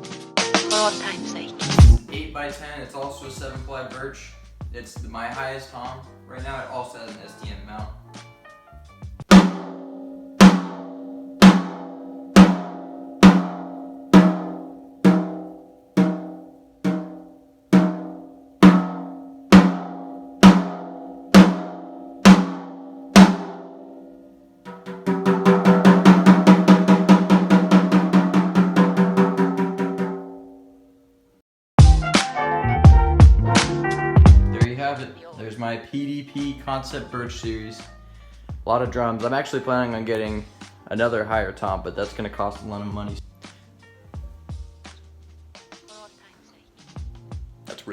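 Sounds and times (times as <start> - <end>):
fast drum roll: 1.8 - 2.4, 9.3 - 23.6, 24.7 - 30.4
tom drum hits ringing: 9.3 - 23.9, 24.7 - 30.5.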